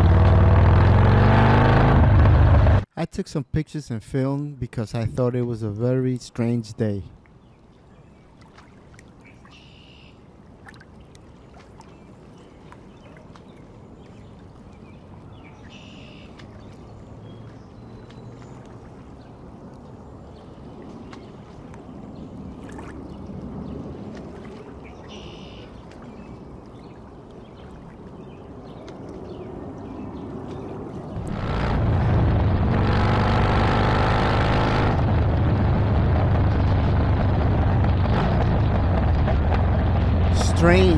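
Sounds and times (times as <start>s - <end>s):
motorcycle engine rumble: 0.0s - 2.9s, 31.2s - 40.9s
wind and road noise: 0.0s - 2.9s, 6.8s - 40.9s.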